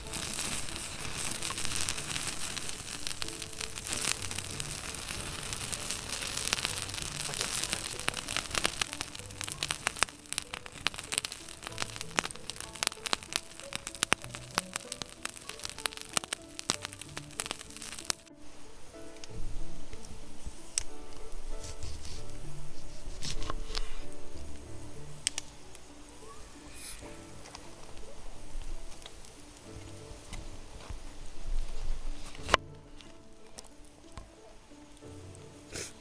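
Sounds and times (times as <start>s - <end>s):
fire crackling and popping: 0.0s - 36.0s
fish sizzling on grill: 0.0s - 36.0s
quiet background music: 0.0s - 36.0s.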